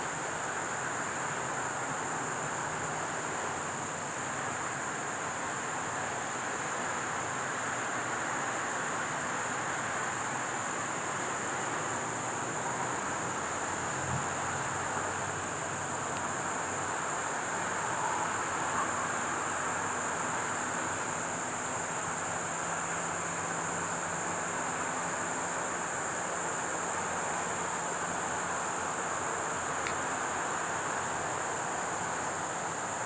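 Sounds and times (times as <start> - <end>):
insects chorus: 0.0 - 33.0.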